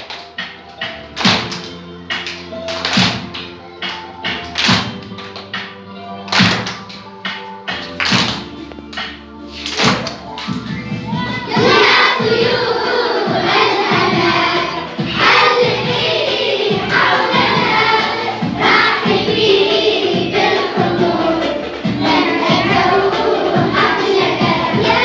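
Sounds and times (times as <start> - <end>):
musical accompaniment with beat: 0.0 - 25.0
children singing: 11.0 - 25.0.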